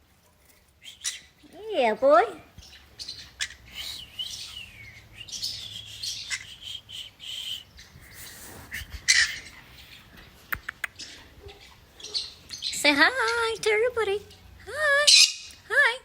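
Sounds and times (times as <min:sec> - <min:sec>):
parrot chirping and squawking: 0:00.8 - 0:01.6, 0:02.6 - 0:06.9, 0:07.6 - 0:15.6
sharp clicks: 0:10.5 - 0:11.0.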